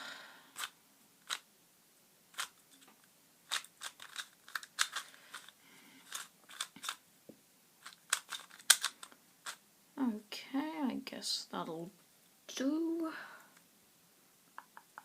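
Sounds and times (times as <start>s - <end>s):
puzzle cube plastic clicks: 0.6s - 1.5s, 2.3s - 7.0s, 7.8s - 9.6s.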